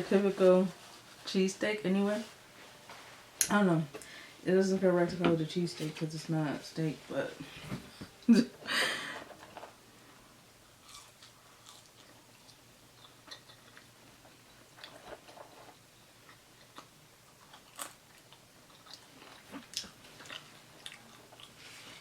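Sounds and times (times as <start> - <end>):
chewing with mouth clicks: 10.8 - 15.0, 16.2 - 21.6.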